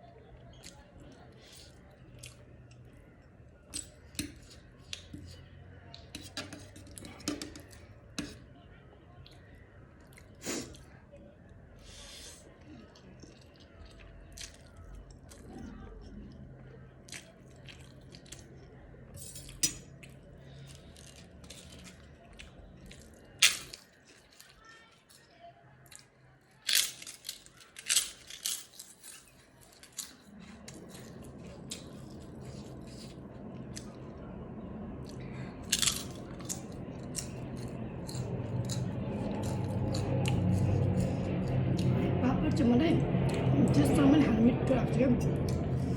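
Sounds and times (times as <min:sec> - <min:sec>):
person crunching and chewing food: 0:11.8 - 0:18.8, 0:19.4 - 0:42.0
steady low hum: 0:28.0 - 0:45.9.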